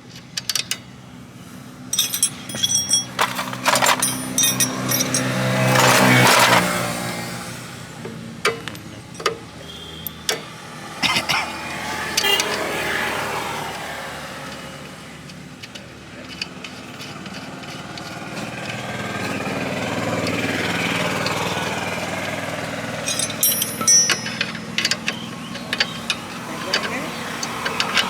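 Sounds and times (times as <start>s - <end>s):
motor vehicles passing by: 0.1s - 28.0s
sharp metallic clinks: 1.9s - 7.2s, 8.4s - 11.4s, 12.1s - 12.7s, 20.2s - 28.0s.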